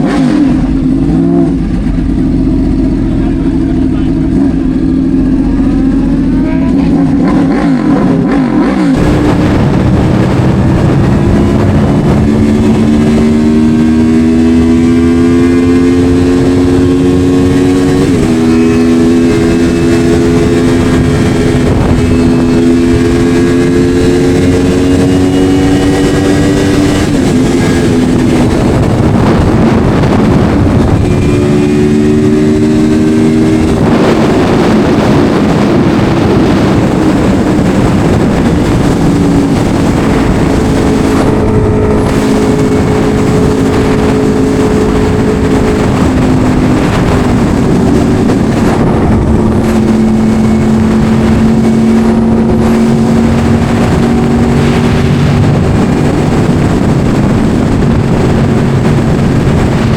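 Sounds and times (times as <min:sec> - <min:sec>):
motorcycle engine running: 0:00.0 - 0:59.9
wind noise on microphone: 0:00.0 - 0:59.9.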